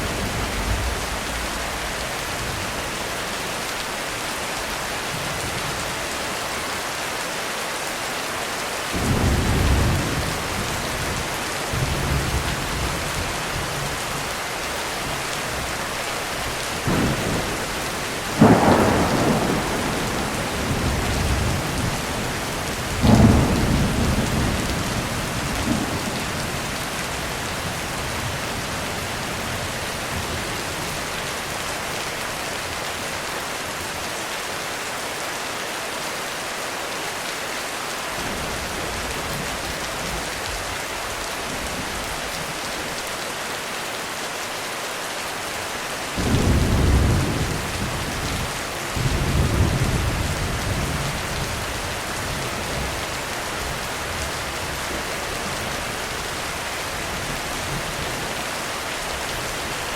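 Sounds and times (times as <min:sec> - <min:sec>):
heavy rain pouring: 0:00.0 - 0:59.9
thunder rumbling: 0:16.8 - 0:30.5, 0:46.2 - 0:54.8
sharp thunder clap: 0:16.9 - 0:26.1.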